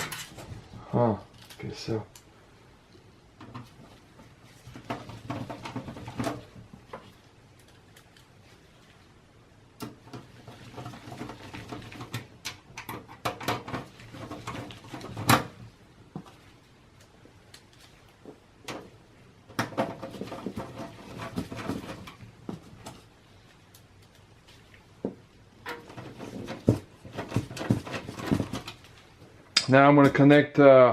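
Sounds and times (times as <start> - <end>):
handling clicks and knocks in computer case: 3.4 - 7.1, 9.8 - 15.7, 18.3 - 23.1, 25.6 - 29.0.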